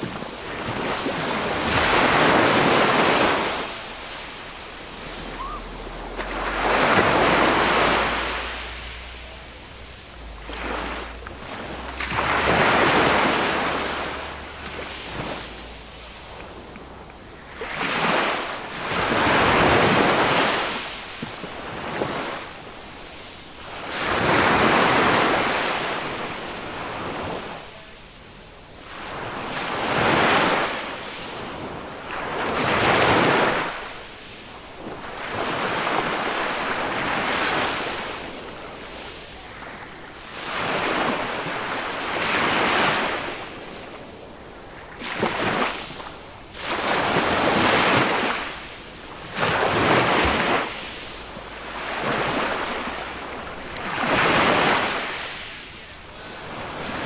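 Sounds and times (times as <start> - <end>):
wind on microphone: 0.0 - 20.7
small waves breaking on sand: 0.0 - 57.0.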